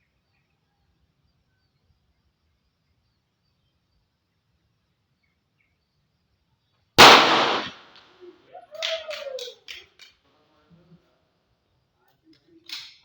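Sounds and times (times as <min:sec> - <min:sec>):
pistol shot: 0:07.0 - 0:07.9.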